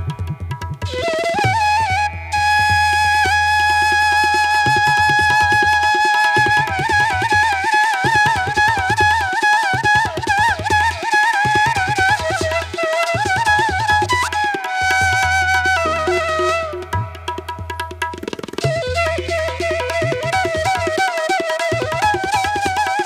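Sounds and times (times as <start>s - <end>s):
tabla drumming: 0.0s - 23.0s
flute melody: 0.4s - 23.0s.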